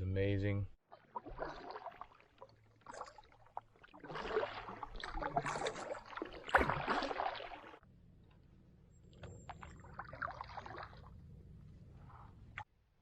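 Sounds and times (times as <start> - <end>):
canoe paddle splashing in water: 0.8 - 7.8, 9.5 - 11.1.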